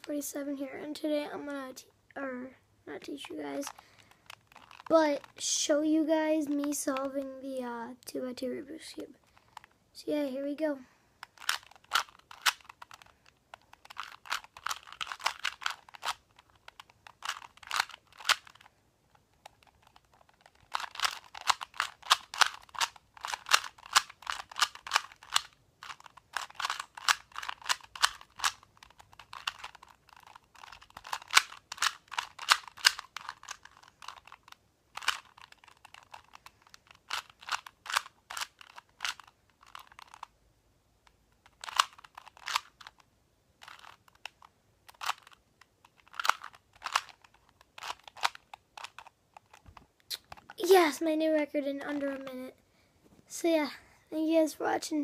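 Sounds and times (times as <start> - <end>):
plastic puzzle cube clicking: 3.6 - 5.7, 11.2 - 40.4, 41.0 - 50.7.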